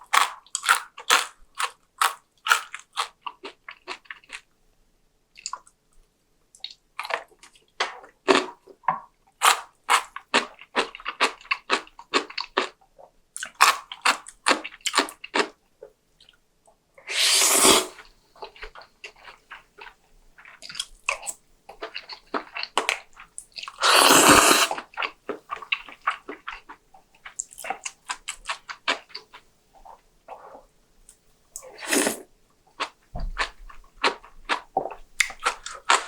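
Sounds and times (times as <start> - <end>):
wet mouth clicks and chewing: 5.4 - 5.8, 18.4 - 30.5, 32.8 - 36.0
loud slurps: 17.0 - 18.0, 23.8 - 24.8, 31.7 - 32.2.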